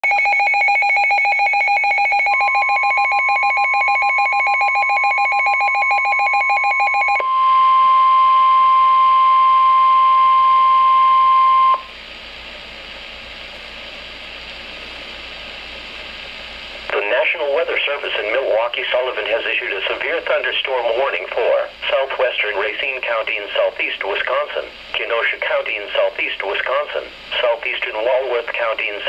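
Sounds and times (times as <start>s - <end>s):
fast-pulsing electronic alarm: 0.0s - 11.9s
steady warning tone: 0.0s - 12.0s
radio hiss: 16.0s - 29.0s.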